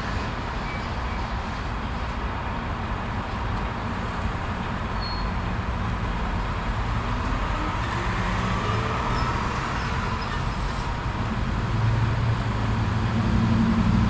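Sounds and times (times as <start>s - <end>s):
traffic noise: 0.0s - 14.0s
vehicle engines idling: 3.8s - 14.0s.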